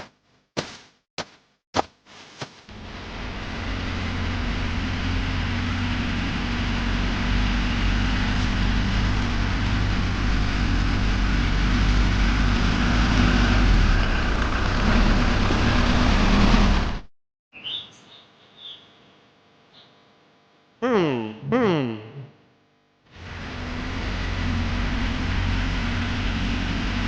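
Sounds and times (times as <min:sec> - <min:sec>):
construction vehicle engine running: 0:02.7 - 0:17.1, 0:23.2 - 0:27.0.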